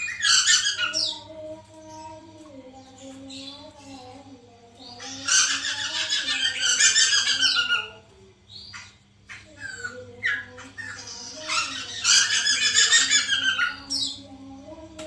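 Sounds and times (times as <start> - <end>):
bird harsh chattering calls: 0.0 - 1.2, 4.9 - 14.2.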